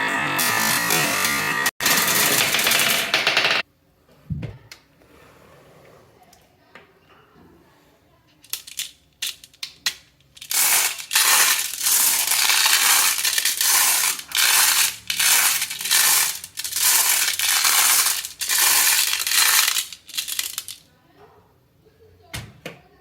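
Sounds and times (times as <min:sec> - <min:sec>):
marbles rolling on wooden track: 0:01.8 - 0:03.6, 0:10.4 - 0:20.8.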